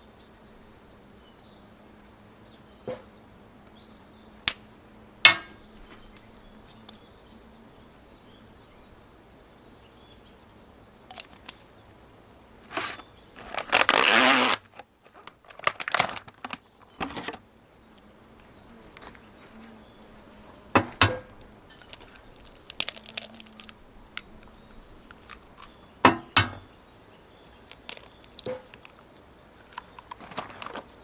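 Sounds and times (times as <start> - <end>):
handling rustle: 12.6 - 17.4, 18.4 - 25.9, 27.6 - 31.0
handling clicks and knocks: 12.7 - 17.4, 27.7 - 31.0.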